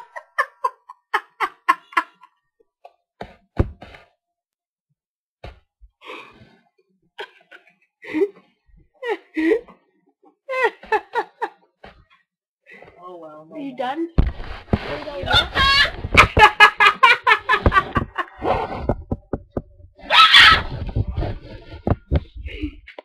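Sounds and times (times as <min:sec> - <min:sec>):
person laughing: 0:00.0 - 0:02.3, 0:07.2 - 0:08.4, 0:16.2 - 0:19.0
voiced gasps and squeaks: 0:06.0 - 0:06.7.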